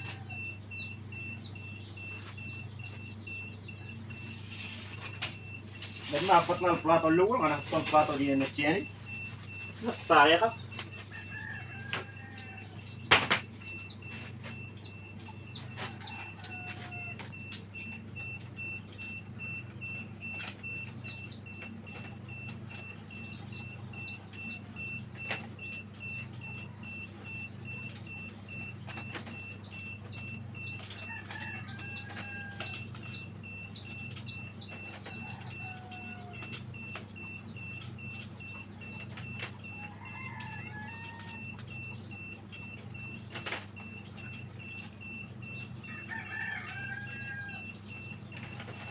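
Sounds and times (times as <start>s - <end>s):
chickens clucking: 0.0s - 17.6s, 26.1s - 48.9s.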